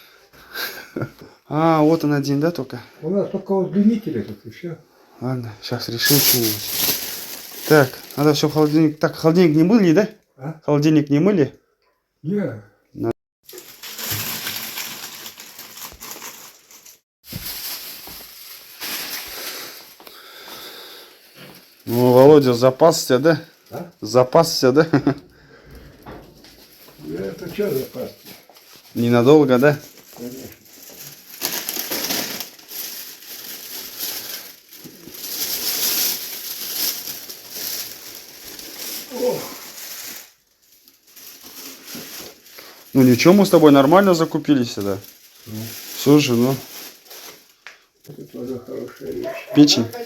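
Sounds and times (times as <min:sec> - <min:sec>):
plastic bags rustling and crinkling: 0:05.6 - 0:09.9, 0:13.4 - 0:25.2, 0:25.8 - 0:50.0
groceries rustling and knocking: 0:13.4 - 0:23.1.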